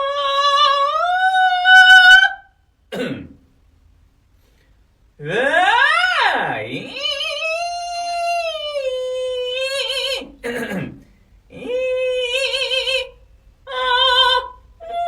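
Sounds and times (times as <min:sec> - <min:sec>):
person singing wordless high notes: 0:05.2 - 0:10.4, 0:11.5 - 0:15.0.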